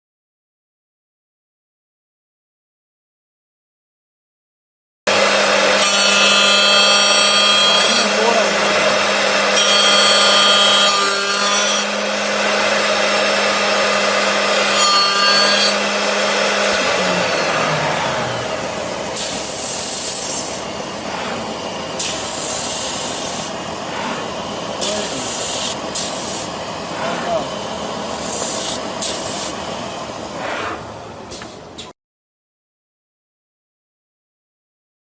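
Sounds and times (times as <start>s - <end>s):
cutter scraping wood: 5.1s - 29.6s
spindle winding down: 5.1s - 30.8s
lathe spindle hum: 5.1s - 31.3s.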